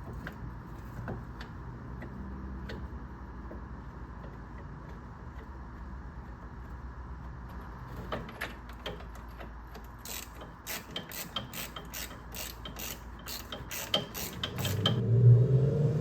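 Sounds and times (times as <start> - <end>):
hand ratchet clicking: 10.0 - 15.0.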